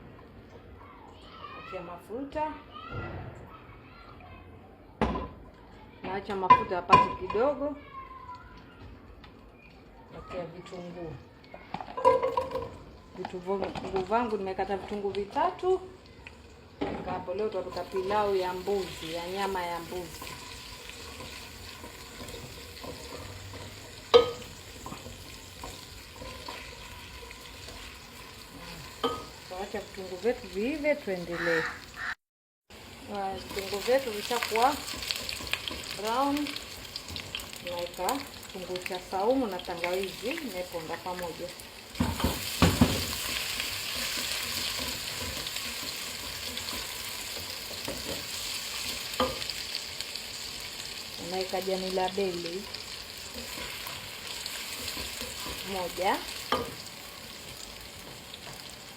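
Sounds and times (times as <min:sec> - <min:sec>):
onions sizzling in hot oil: 0:11.8 - 0:32.0, 0:32.7 - 0:58.9
stirring taps: 0:17.6 - 0:29.8, 0:33.2 - 0:39.1, 0:41.9 - 0:49.7, 0:52.4 - 0:58.7.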